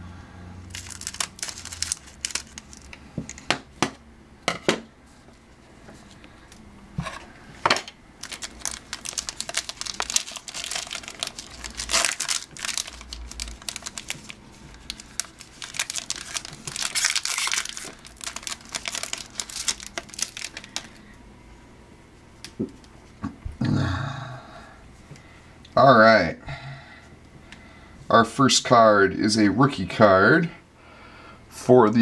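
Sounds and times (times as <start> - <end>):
wrapping crinkling and tearing: 0.7 - 3.4, 8.2 - 21.0.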